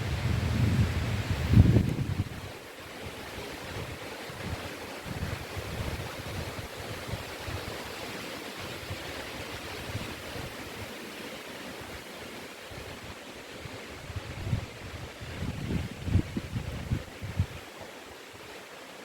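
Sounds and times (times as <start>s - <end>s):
wind buffeting microphone: 0.0s - 2.6s, 3.4s - 7.8s, 12.8s - 17.6s
wind rushing through trees: 0.0s - 19.0s.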